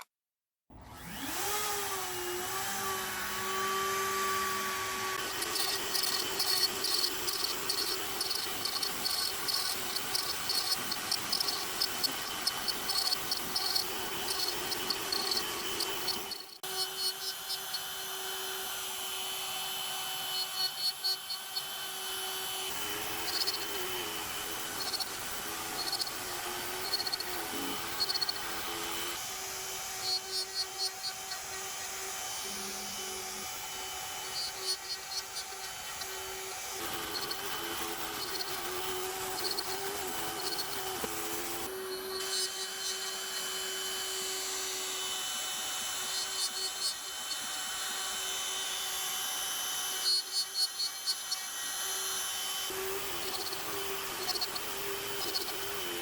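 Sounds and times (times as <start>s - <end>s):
cnc router cutting wood: 0.8s - 56.0s
faint high ticking: 5.2s - 17.8s, 22.9s - 28.9s.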